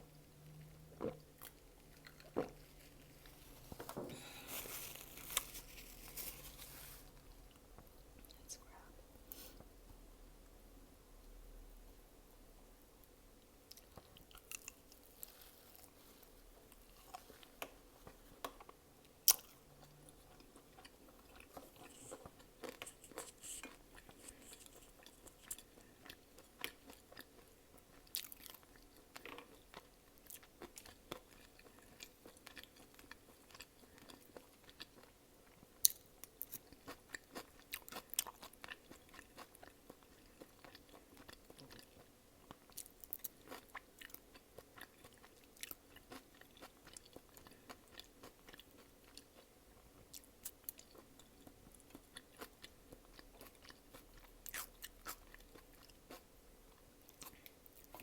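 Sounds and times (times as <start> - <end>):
person chewing and biting food: 0.6 - 6.5.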